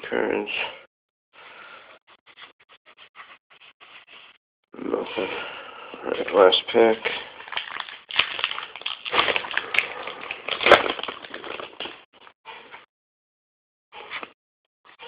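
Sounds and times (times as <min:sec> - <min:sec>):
wrapper crinkling and rustling: 0:07.4 - 0:12.0.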